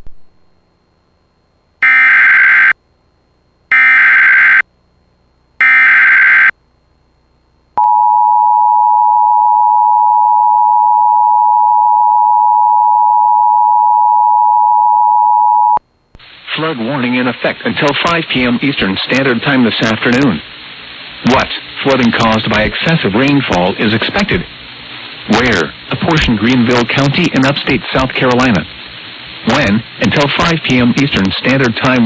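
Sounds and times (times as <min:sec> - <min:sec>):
loud steady attention tone: 0:07.8 - 0:15.8.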